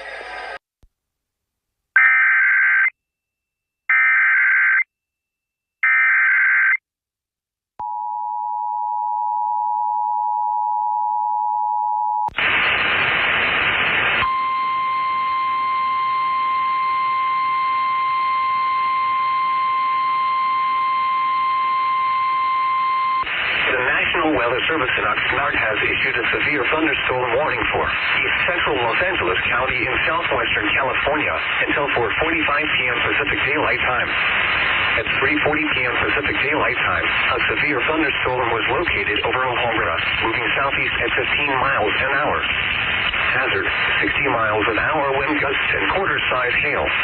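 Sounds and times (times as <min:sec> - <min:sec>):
single-tone warning alarm: 0:02.0 - 0:02.9, 0:03.9 - 0:04.9, 0:14.2 - 0:23.3
radio static: 0:12.3 - 0:15.6, 0:23.2 - 0:47.0
radio hiss: 0:12.4 - 0:15.2, 0:23.2 - 0:47.0
two-tone attention signal: 0:14.2 - 0:23.3.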